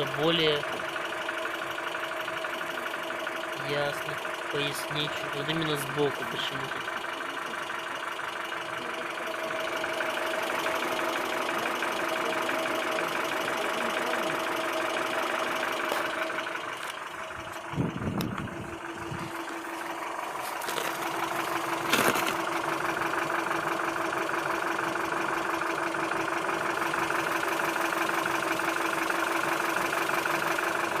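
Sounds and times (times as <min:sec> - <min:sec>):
petrol engine idling with knock: 0:00.0 - 0:31.0.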